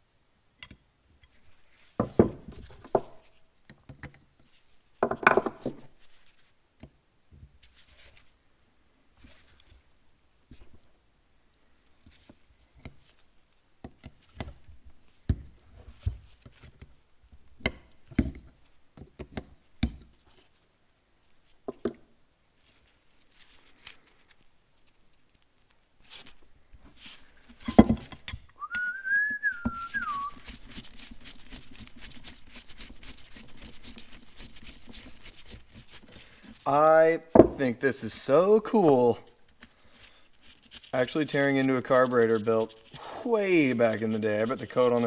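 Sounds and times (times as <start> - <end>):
person whistling: 28.6 - 30.4
scratchy scrubbing strokes: 29.7 - 36.9, 39.9 - 45.0.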